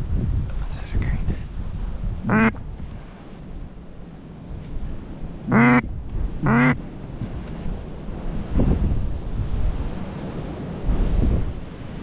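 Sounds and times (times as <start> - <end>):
duck quacking: 2.3 - 2.6, 5.5 - 5.8, 6.4 - 6.8.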